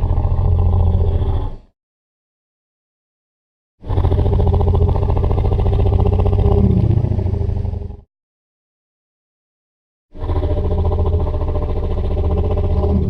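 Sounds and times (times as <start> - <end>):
deep rough dragon roar: 0.0 - 1.7, 3.8 - 8.1, 10.2 - 13.0.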